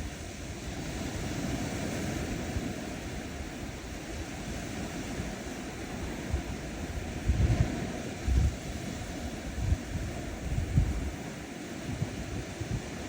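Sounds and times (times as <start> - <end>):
ocean waves washing on sand: 0.0 - 13.0.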